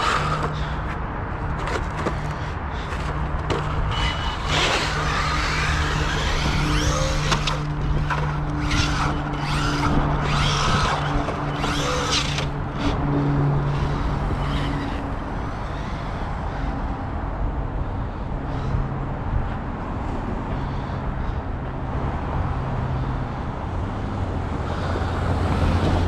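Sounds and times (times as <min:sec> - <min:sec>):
steady low hum: 0:00.0 - 0:14.5
rc truck motor whine: 0:00.0 - 0:17.2.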